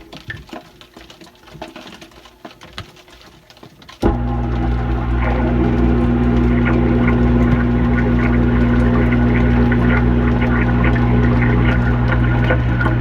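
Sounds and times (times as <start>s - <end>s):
dishwasher pump humming: 4.0s - 13.0s
water spraying and spattering: 4.0s - 13.0s.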